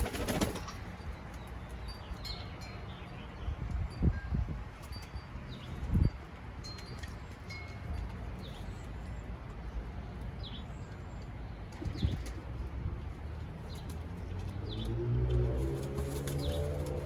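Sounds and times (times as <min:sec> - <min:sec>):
wings fluttering: 0:00.0 - 0:00.9, 0:15.5 - 0:17.0
small birds chirping: 0:04.9 - 0:17.0.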